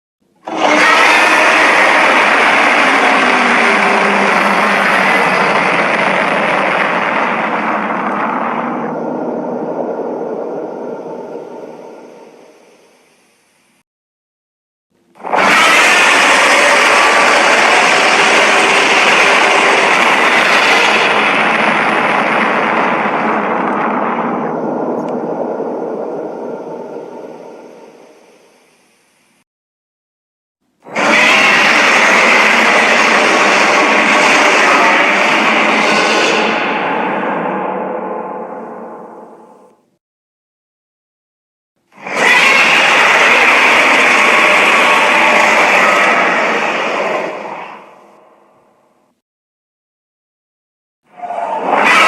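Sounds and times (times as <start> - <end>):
harsh rushing noise: 0.4 - 13.2, 15.2 - 29.0, 30.9 - 39.6, 42.0 - 48.4.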